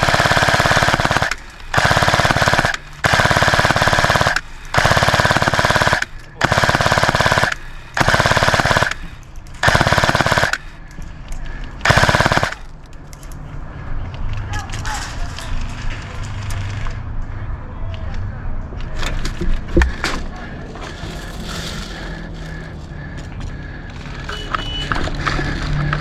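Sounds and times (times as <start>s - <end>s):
airsoft gun automatic fire: 0.0s - 10.8s, 11.8s - 12.7s, 21.0s - 22.7s.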